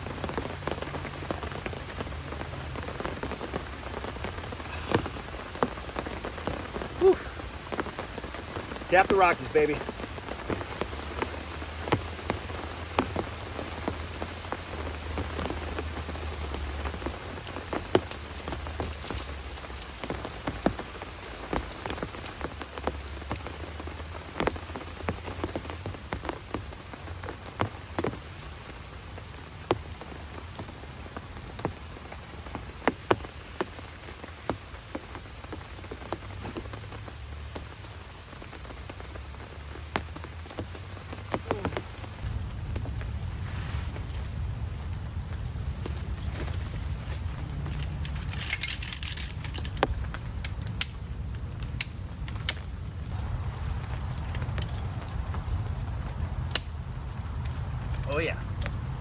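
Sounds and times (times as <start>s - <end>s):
drops hitting a tarp: 0.0s - 37.0s, 38.6s - 44.4s, 45.6s - 52.7s
steady rain: 0.0s - 59.0s
low rumble: 41.9s - 59.0s.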